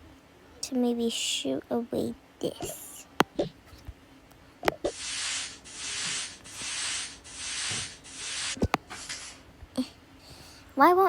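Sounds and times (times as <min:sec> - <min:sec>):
scrubbing strokes: 0:04.7 - 0:09.4.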